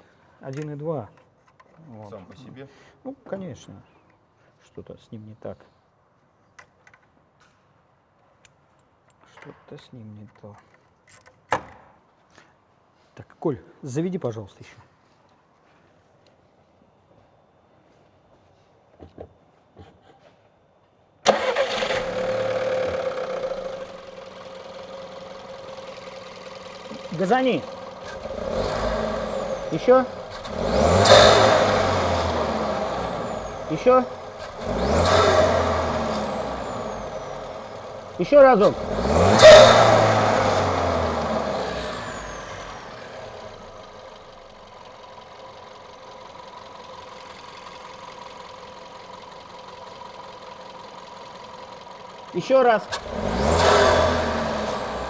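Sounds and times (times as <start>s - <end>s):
car engine starting and idling: 21.2s - 55.0s.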